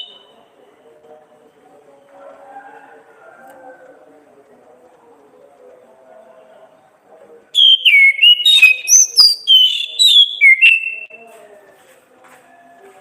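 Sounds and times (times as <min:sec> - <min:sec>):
thrush singing whistled notes: 0:00.0 - 0:00.4, 0:07.6 - 0:11.2.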